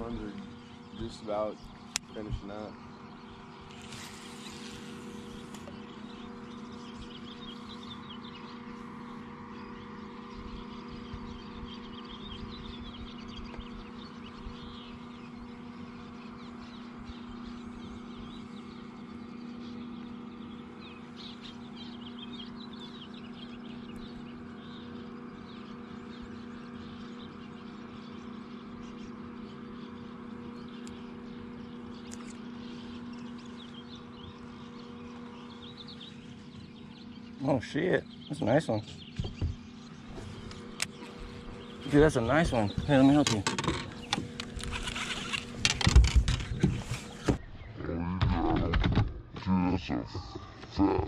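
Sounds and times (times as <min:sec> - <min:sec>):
steady hum: 0:00.0 - 0:47.7
birds chirping: 0:00.0 - 0:51.0.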